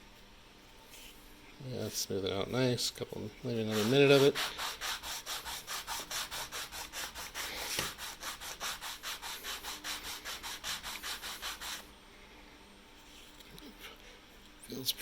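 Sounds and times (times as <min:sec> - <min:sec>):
sanding sponge scratching: 0:03.4 - 0:11.9.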